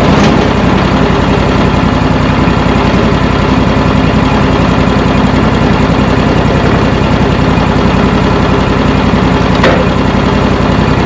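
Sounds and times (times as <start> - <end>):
sawmill gasoline engine running: 0.0 - 11.0.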